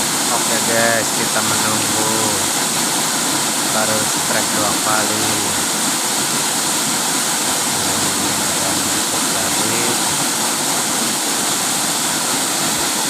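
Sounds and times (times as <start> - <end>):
waterfall rushing and splashing: 0.0 - 13.0.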